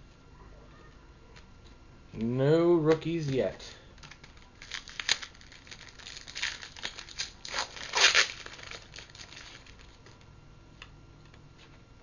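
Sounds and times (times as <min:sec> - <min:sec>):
foil wrapper crinkling and tearing: 0:04.0 - 0:10.2.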